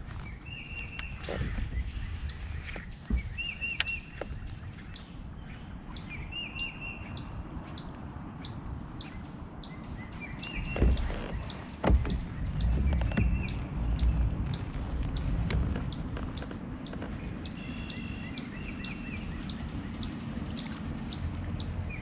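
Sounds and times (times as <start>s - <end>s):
low rumble: 0.0s - 22.0s
songbird singing: 0.0s - 22.0s.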